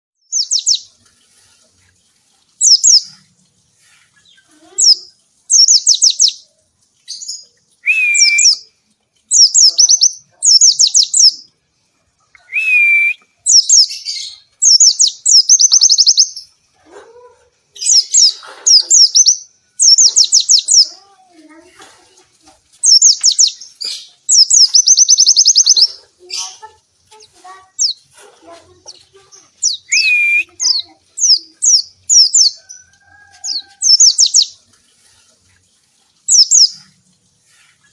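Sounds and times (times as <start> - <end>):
bird singing rapid high chirps: 0.2 - 1.0, 2.6 - 3.3, 4.2 - 6.5, 7.1 - 8.7, 9.3 - 11.5, 12.4 - 16.5, 17.8 - 21.0, 22.8 - 26.7, 27.7 - 28.1, 28.9 - 32.8, 33.5 - 34.6, 36.2 - 36.9.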